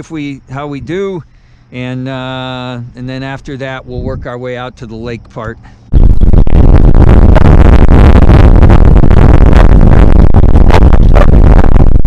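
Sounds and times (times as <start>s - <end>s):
wind buffeting microphone: 3.8s - 4.4s, 5.9s - 12.0s.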